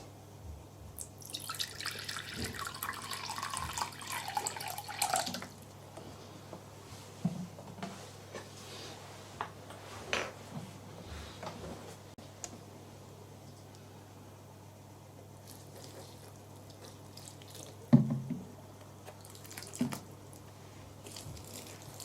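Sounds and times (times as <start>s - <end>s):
water pouring: 1.2s - 5.6s.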